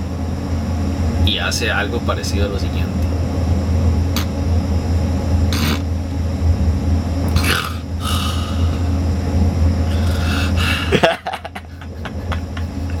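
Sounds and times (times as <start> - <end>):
person imitating snoring: 5.5 - 5.8, 7.4 - 8.8, 9.9 - 10.6.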